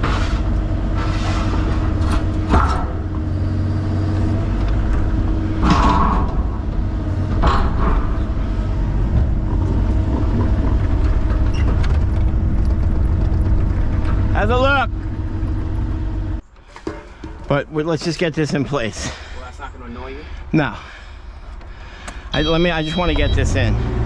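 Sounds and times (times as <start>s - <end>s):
excavator diesel engine running: 0.0s - 16.5s.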